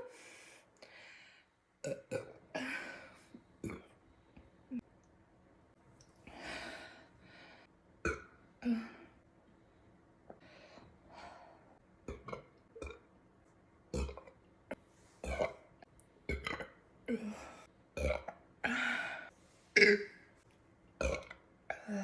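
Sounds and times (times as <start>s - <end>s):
woman burping: 19.8s - 20.2s.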